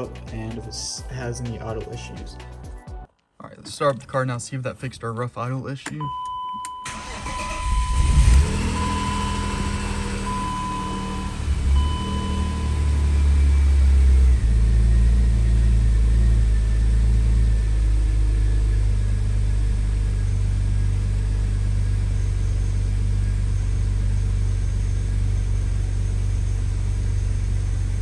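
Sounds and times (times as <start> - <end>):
car engine idling: 6.8 - 28.0.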